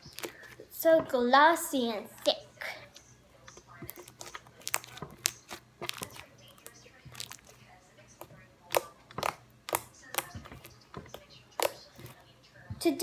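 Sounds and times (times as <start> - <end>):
slime wet clicks and pops: 8.7 - 10.6.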